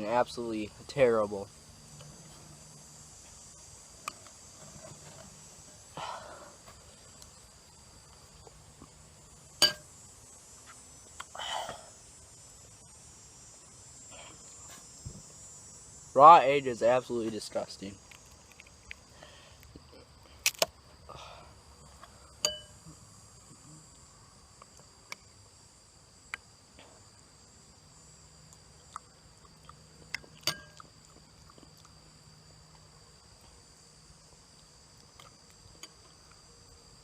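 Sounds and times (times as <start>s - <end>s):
crickets chirring: 0.0s - 37.0s
sharp clicks and clinks: 30.2s - 30.9s.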